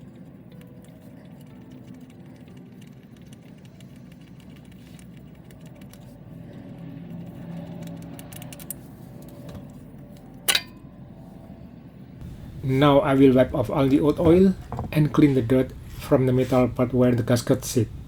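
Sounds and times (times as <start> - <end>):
low hum: 0.0 - 18.0.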